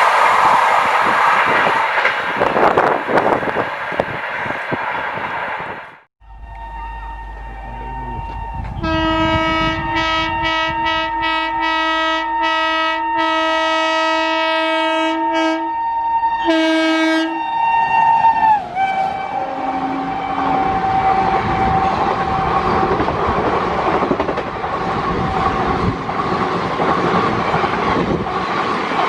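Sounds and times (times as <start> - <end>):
train rumble: 0.0 - 12.0, 17.8 - 29.0
locomotive horn blasts: 6.3 - 23.0.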